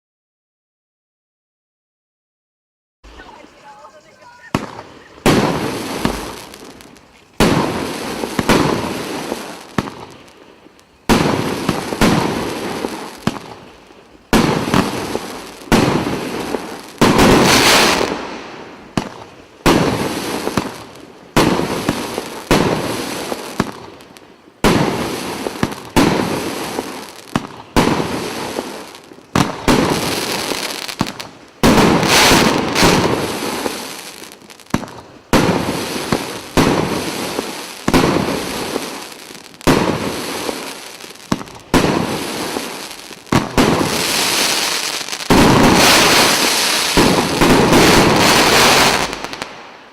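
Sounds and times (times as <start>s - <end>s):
firework bangs: 3.0s - 49.9s.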